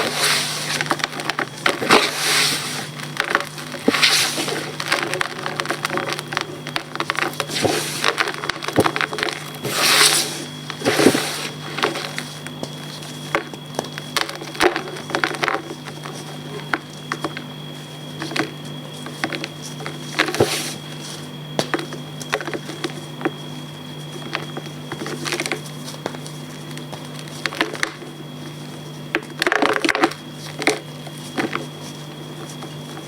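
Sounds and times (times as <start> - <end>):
chalk crumbling and crackling: 0.0 - 16.3
chalk crunches: 0.0 - 16.3, 19.0 - 21.7.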